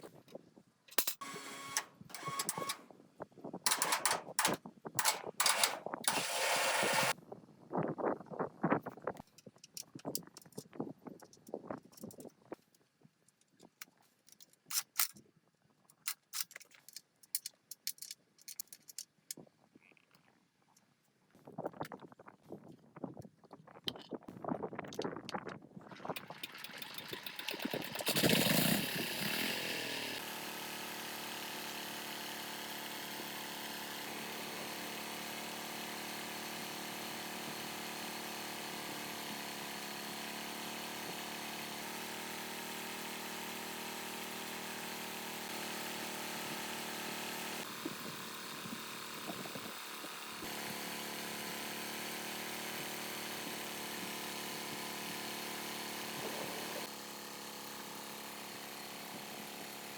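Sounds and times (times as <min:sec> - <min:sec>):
generator engine running: 0:01.0 - 0:02.8, 0:03.7 - 0:07.1, 0:26.0 - 0:59.9.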